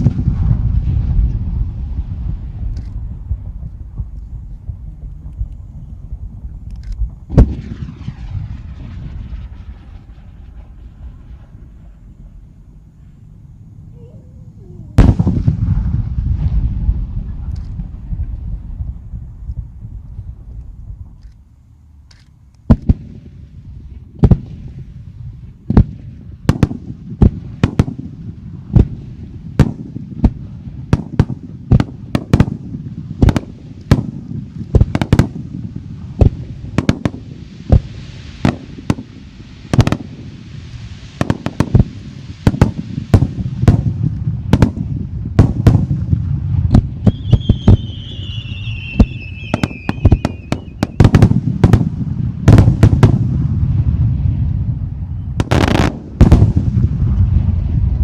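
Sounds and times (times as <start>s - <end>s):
fireworks bangs: 0.0s - 21.3s, 22.6s - 58.0s
hissing crackle: 0.0s - 58.0s
low rumbling: 0.0s - 58.0s
whistling firework: 0.0s - 58.0s.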